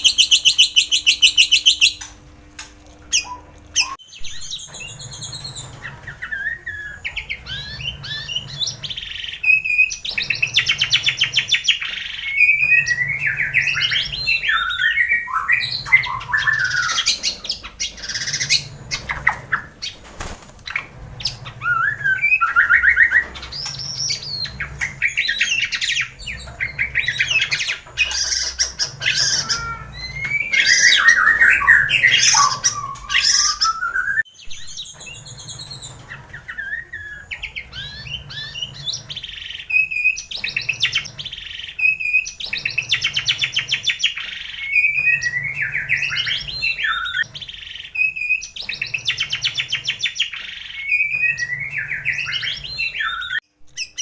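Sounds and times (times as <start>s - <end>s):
songbird whistles and trills: 3.0s - 20.0s, 20.7s - 54.0s.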